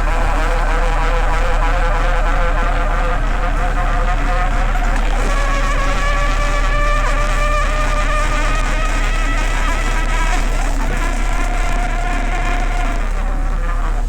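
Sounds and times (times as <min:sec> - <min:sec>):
boat machinery humming: 0:00.0 - 0:14.0
machinery whine: 0:00.0 - 0:14.0.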